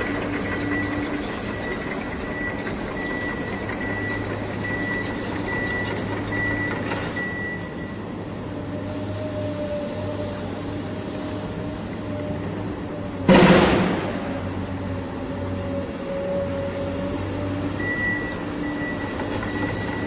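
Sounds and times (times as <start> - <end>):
engine-like hum: 0.0 - 20.0
reversing beeper beeping: 0.4 - 8.0, 17.7 - 20.0.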